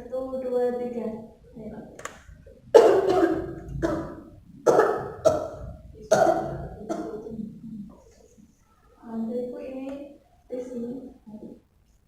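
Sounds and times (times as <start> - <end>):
woman coughing forcefully: 2.8 - 7.4.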